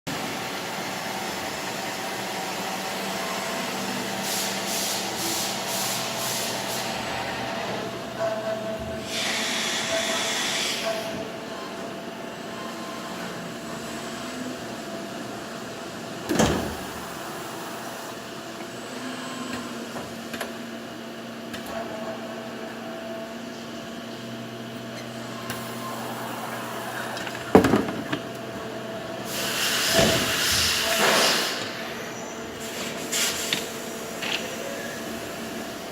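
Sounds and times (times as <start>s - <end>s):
lathe machine hum and whine: 0.1s - 35.9s
hiss: 4.2s - 7.2s, 9.0s - 11.1s, 29.2s - 33.8s.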